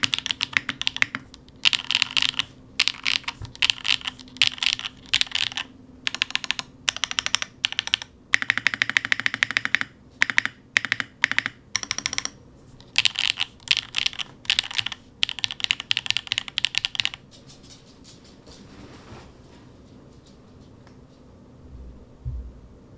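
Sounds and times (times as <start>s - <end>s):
mechanical keyboard typing: 0.0s - 17.2s.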